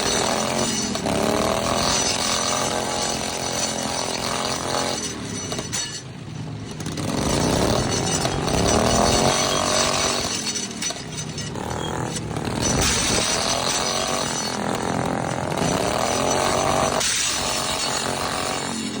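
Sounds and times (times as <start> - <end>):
lawnmower engines revving: 0.0 - 19.0.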